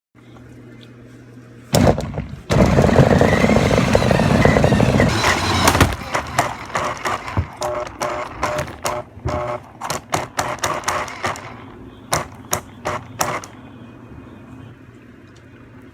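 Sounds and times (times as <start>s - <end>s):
faint motor whine: 0.2s - 15.9s
rapid clicks and knocks: 1.8s - 13.6s
rc car running on floor: 2.5s - 13.5s.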